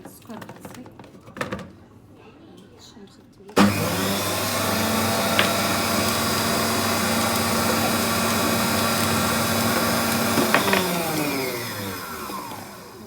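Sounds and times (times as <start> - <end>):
electric mixer motor humming: 3.6 - 13.0.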